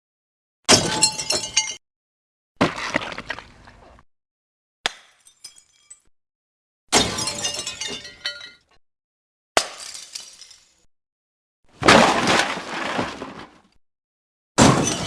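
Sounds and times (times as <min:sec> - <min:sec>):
shattering crashes: 0:11.8 - 0:13.5.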